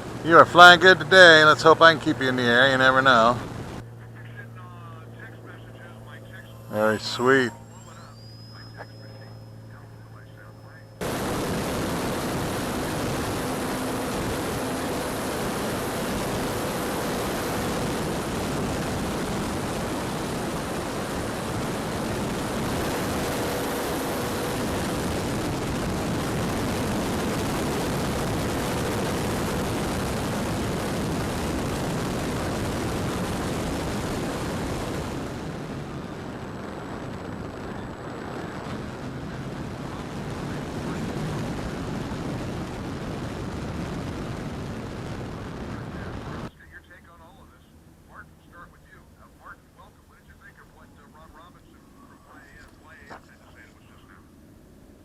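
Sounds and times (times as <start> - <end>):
faint electric motor and propeller drone: 0.0 - 46.5
wind rushing over microphone: 11.0 - 46.5.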